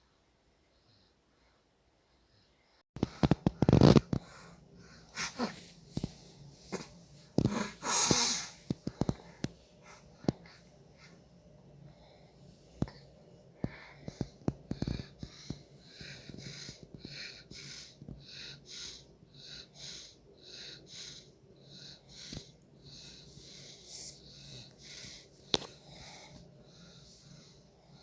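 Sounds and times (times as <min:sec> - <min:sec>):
quick airy breathing: 0:04.2 - 0:11.3, 0:13.6 - 0:28.0.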